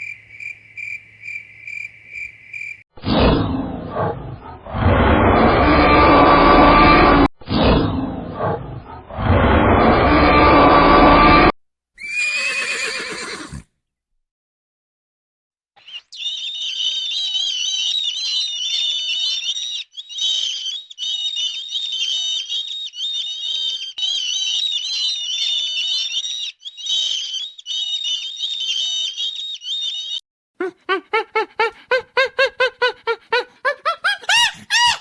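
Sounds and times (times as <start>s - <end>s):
small birds chirping: 15.8s - 30.2s.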